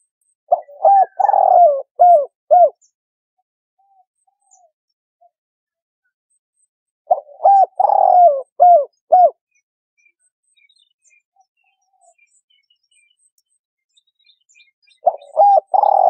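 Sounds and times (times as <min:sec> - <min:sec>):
faint small bird chirps: 0:00.0 - 0:16.0
dove cooing: 0:00.5 - 0:02.8, 0:07.1 - 0:09.4, 0:15.0 - 0:16.0.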